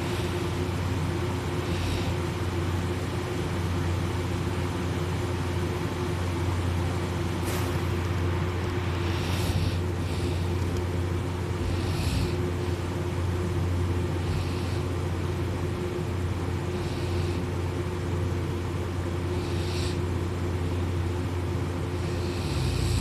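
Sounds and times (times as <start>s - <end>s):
person snoring: 1.5s - 2.4s, 8.9s - 10.6s, 11.5s - 12.6s, 19.3s - 20.1s, 22.0s - 23.0s.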